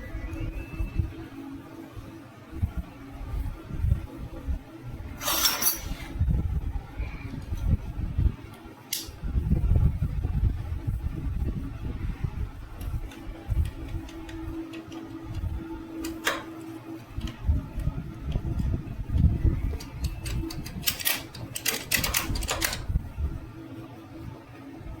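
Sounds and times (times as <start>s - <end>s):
steady fan hum: 0.0s - 25.0s
metal tools clicking and clinking: 5.2s - 5.9s.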